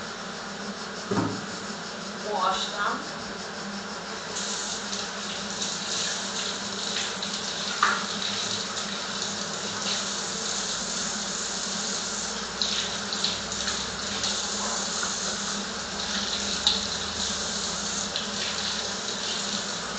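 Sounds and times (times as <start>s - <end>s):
clunk: 1.1s - 1.4s
kitchen tap running: 4.3s - 19.9s.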